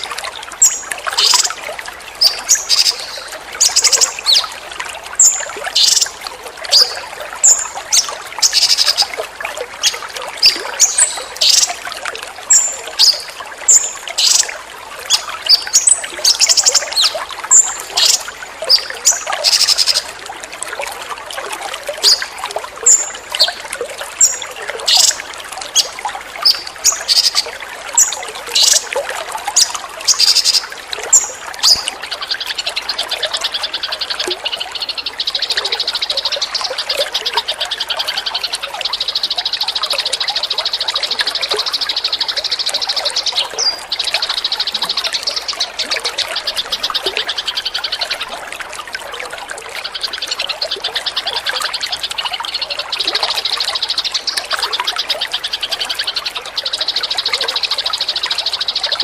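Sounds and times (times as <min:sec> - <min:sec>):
water trickling: 0:00.0 - 0:59.0
songbird chirping: 0:02.2 - 0:04.6.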